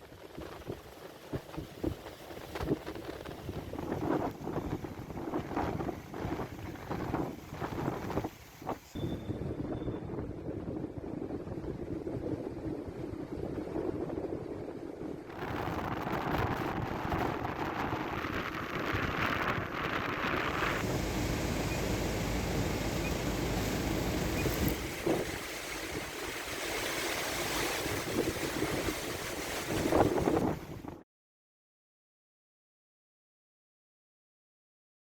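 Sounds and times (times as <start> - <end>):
wind buffeting microphone: 0.0 - 31.0
strong wind blowing: 1.4 - 31.0
surf: 15.3 - 31.0.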